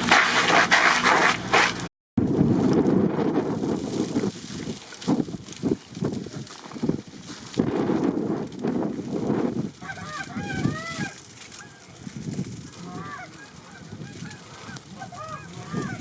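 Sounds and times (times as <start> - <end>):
wind buffeting microphone: 2.2 - 16.0
geese honking: 9.8 - 12.0, 12.7 - 16.0.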